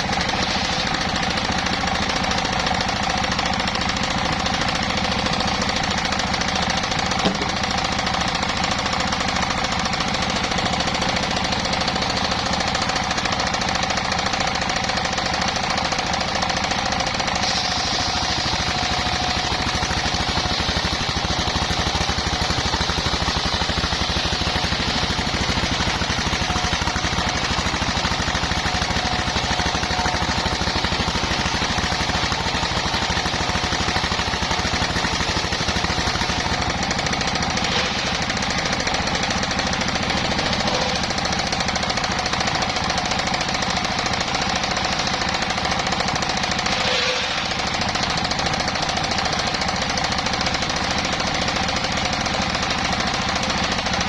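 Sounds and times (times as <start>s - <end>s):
engine throbbing: 0.0s - 54.0s
saw high whine: 17.2s - 42.2s, 46.5s - 48.4s.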